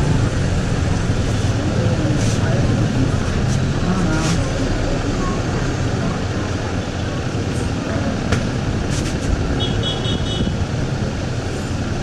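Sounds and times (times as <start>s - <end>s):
street traffic noise: 0.0s - 12.0s.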